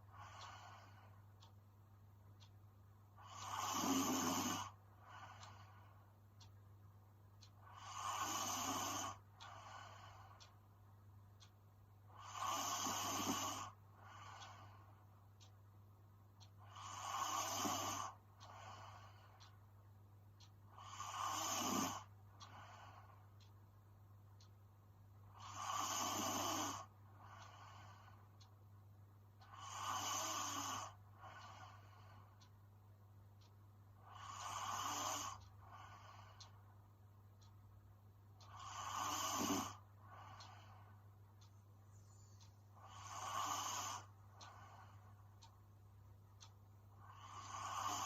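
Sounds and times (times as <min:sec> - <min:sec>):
steady low hum: 0:00.0 - 0:48.0
woman snoring: 0:03.2 - 0:04.8, 0:07.6 - 0:09.2, 0:12.1 - 0:13.8, 0:16.6 - 0:18.2, 0:20.8 - 0:22.1, 0:25.4 - 0:26.9, 0:29.5 - 0:31.6, 0:34.1 - 0:35.9, 0:38.5 - 0:39.8, 0:42.8 - 0:44.1, 0:47.0 - 0:48.0.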